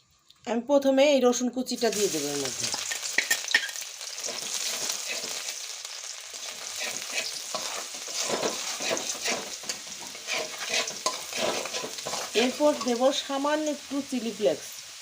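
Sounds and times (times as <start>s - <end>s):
garlic sizzling in hot oil: 1.6s - 15.0s
spatula scraping a pan: 2.7s - 5.6s, 6.3s - 13.8s.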